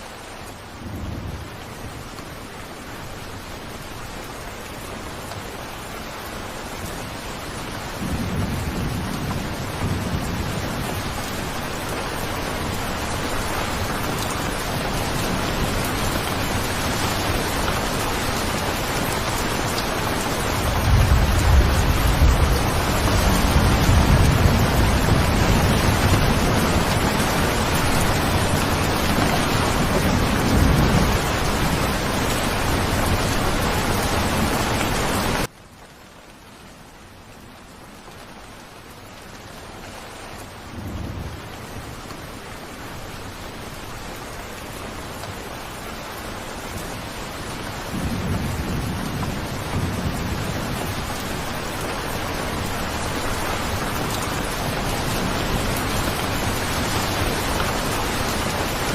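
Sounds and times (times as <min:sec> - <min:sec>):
rain falling: 0:00.0 - 0:58.9
thunder rumbles: 0:07.9 - 0:35.4, 0:47.8 - 0:58.9.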